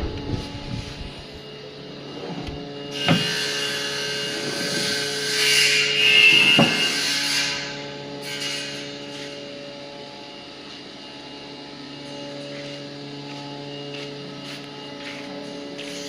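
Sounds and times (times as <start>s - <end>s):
steady hum: 0.0s - 16.0s
power saw cutting wood: 2.8s - 9.3s.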